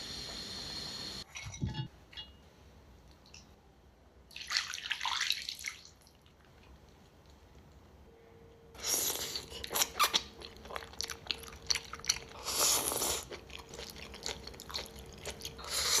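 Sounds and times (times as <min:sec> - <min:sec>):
person chewing crunchy food: 0:08.8 - 0:16.0.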